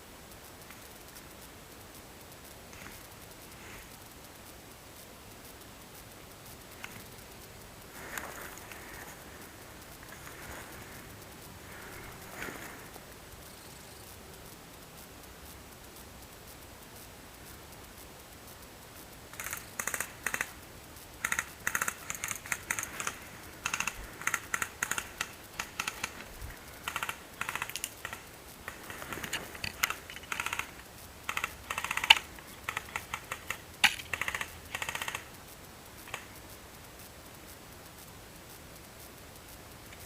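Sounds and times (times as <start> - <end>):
airsoft guns firing bursts: 21.2 - 35.3.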